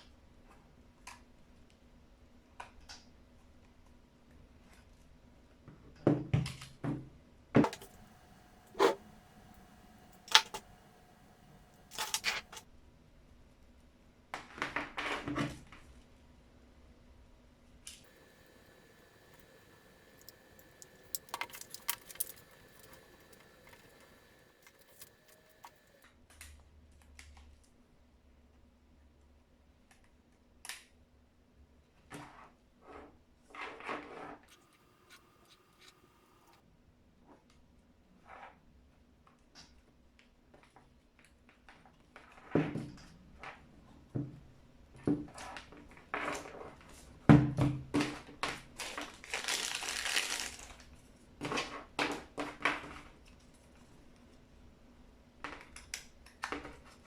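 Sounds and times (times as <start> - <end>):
faint low hum: 7.6 - 12.6, 18.1 - 26.0
clicks and knocks of small objects: 18.1 - 26.0.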